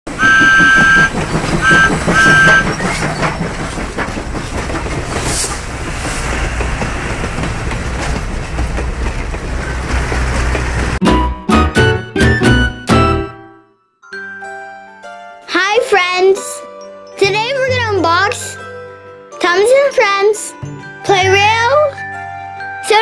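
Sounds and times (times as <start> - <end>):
train running rumble: 0.1 - 11.9
train whistle blowing: 0.2 - 2.7.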